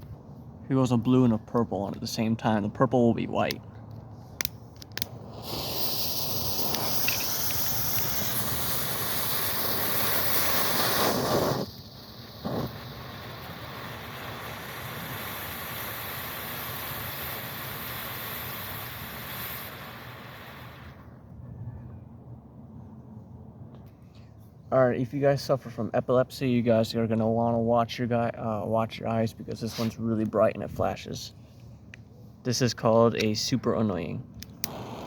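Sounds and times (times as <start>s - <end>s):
smoke balls hissing: 4.4s - 21.1s, 29.5s - 30.2s, 34.4s - 35.0s.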